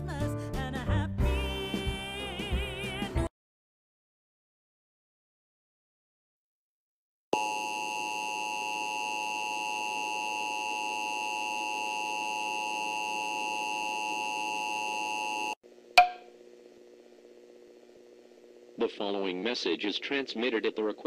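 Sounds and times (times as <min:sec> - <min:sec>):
two-tone electronic alert tone: 0:07.4 - 0:15.6.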